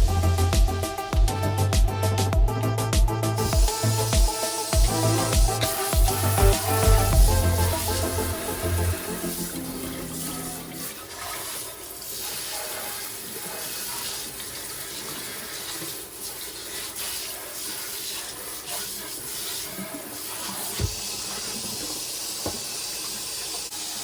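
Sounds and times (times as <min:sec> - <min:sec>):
background music: 0:00.0 - 0:11.0
tap water running into sink: 0:03.4 - 0:24.0.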